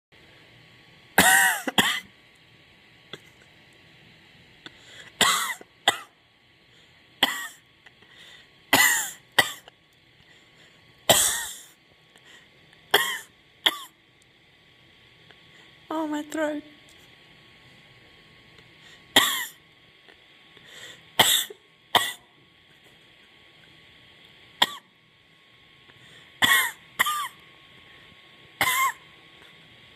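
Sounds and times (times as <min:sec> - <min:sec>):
woman coughing harshly: 0:01.2 - 0:02.1, 0:05.2 - 0:06.2, 0:07.2 - 0:07.6, 0:08.7 - 0:09.7, 0:11.1 - 0:11.7, 0:12.9 - 0:14.0, 0:19.2 - 0:19.6, 0:21.2 - 0:22.3, 0:24.6 - 0:24.9, 0:26.4 - 0:27.4, 0:28.6 - 0:29.0.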